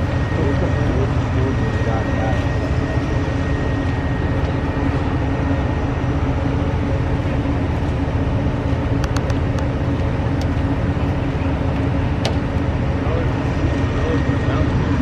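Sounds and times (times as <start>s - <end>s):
constant hum: 0.0s - 15.0s
vehicle engine and road rumble: 0.0s - 15.0s.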